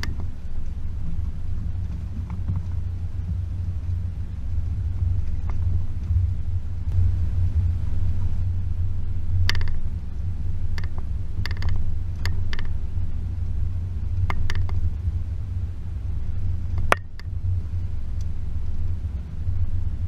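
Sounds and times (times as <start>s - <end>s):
vehicle knocks and clicks: 0.0s - 4.0s, 9.4s - 9.8s, 10.8s - 12.8s, 14.2s - 14.9s, 16.7s - 17.4s
engine low rumble: 0.0s - 20.0s.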